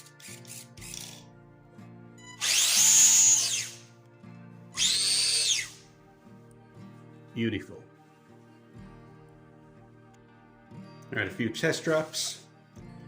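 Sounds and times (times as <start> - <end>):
toy car electric motor whining: 0.0 - 1.2, 2.4 - 3.8, 4.8 - 5.8.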